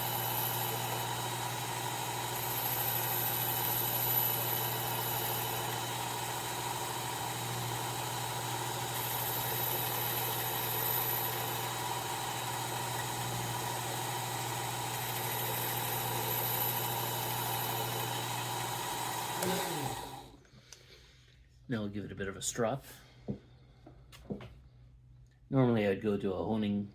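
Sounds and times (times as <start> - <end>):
knife-sharpening grinder humming: 0.0 - 20.4.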